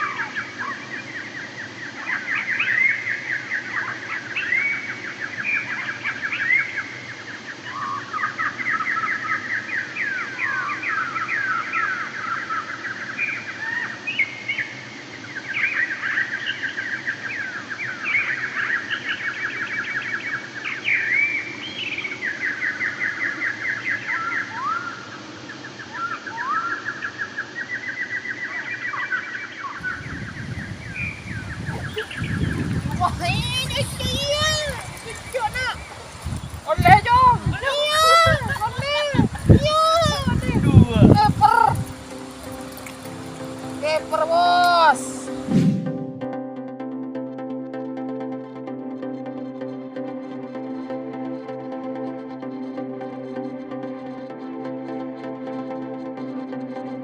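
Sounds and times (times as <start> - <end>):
songbird singing: 0.0 - 45.5.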